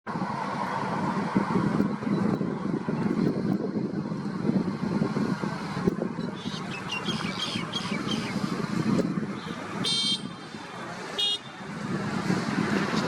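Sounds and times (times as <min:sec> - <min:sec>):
road traffic rumble: 0:00.1 - 0:13.0
high-pitched horn toot: 0:09.8 - 0:10.3.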